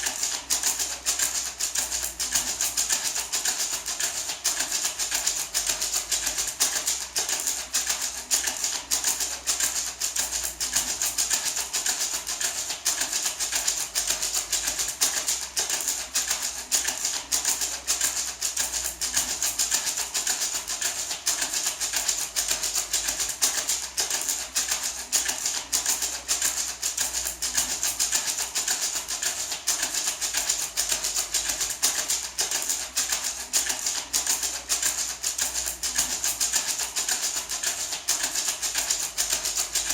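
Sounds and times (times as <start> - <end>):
maraca shaken in rhythm: 0.0 - 39.9.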